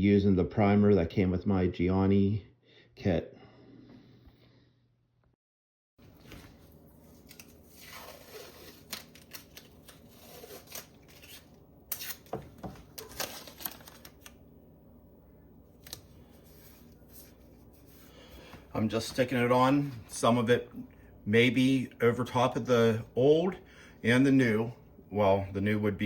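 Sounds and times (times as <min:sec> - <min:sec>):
tape being pulled and torn: 0:07.0 - 0:14.4.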